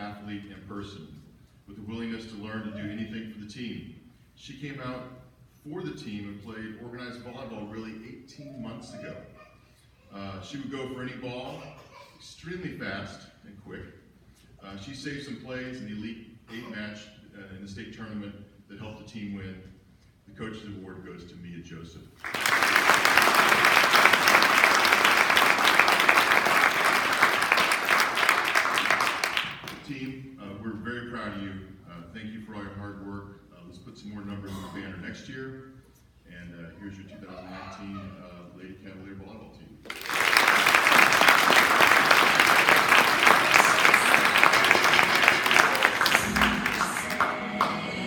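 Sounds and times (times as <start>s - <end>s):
audience applauding: 22.2s - 29.8s, 39.9s - 48.0s.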